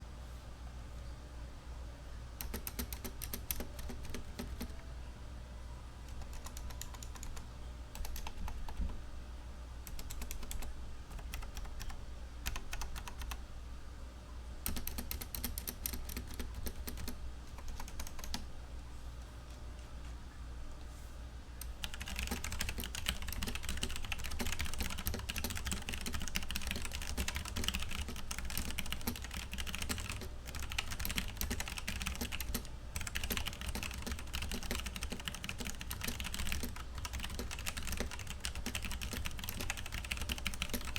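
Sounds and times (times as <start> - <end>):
mechanical keyboard typing: 2.4 - 4.8, 6.1 - 9.0, 9.9 - 13.4, 14.6 - 18.5, 21.6 - 40.9.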